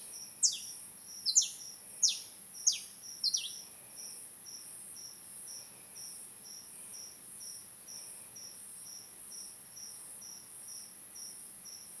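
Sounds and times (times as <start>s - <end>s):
crickets chirping: 0.0s - 12.0s
high-pitched insect trill: 0.1s - 5.2s.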